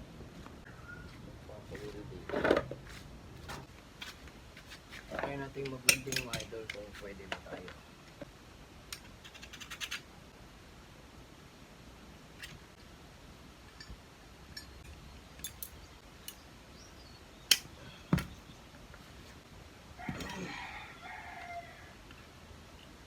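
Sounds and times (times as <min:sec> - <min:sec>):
rooster crowing: 0:20.0 - 0:22.2.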